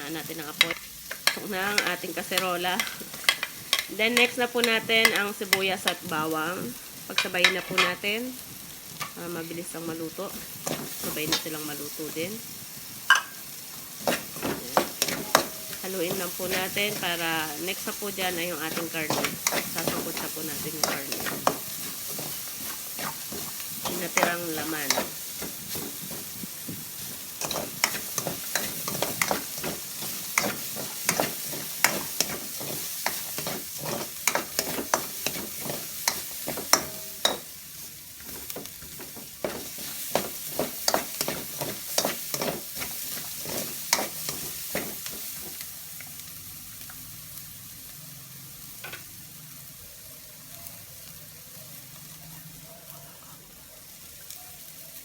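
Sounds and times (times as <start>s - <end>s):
aromatics sizzling in fat: 0.0s - 55.0s
spatula scraping and knocking pot: 14.0s - 17.3s, 18.2s - 37.5s, 38.2s - 45.6s.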